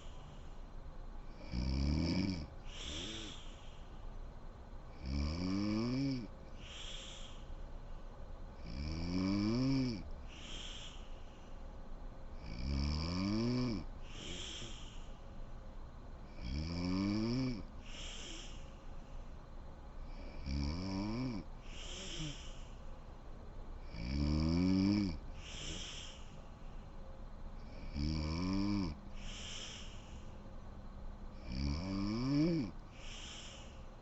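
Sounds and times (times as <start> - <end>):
woman snoring: 1.3 - 3.6, 4.9 - 7.4, 8.6 - 11.1, 12.4 - 15.1, 16.3 - 18.6, 20.1 - 22.8, 23.8 - 26.3, 27.7 - 30.4, 31.4 - 33.8
breathy puff: 2.6 - 4.0, 6.6 - 7.5, 10.3 - 11.6, 14.0 - 15.2, 17.8 - 19.3, 21.6 - 22.9, 25.4 - 26.8, 29.1 - 30.4, 32.9 - 33.9.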